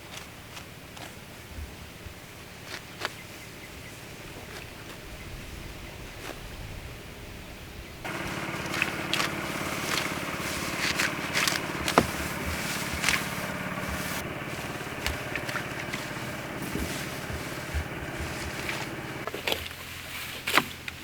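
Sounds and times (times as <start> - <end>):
small engine running: 8.1 - 19.8.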